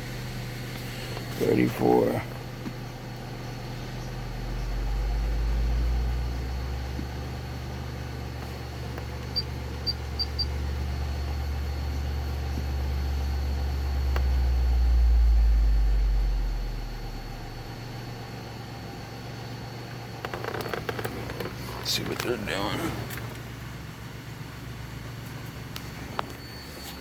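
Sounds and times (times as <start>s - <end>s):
subwoofer bass tone: 0.0s - 25.2s.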